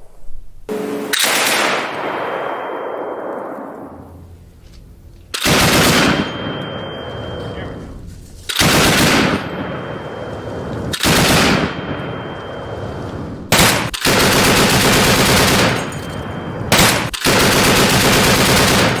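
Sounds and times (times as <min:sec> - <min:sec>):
trailing echo: 0:00.0 - 0:19.0
heavy machine gun bursts: 0:00.7 - 0:02.5, 0:05.3 - 0:06.6, 0:08.5 - 0:19.0.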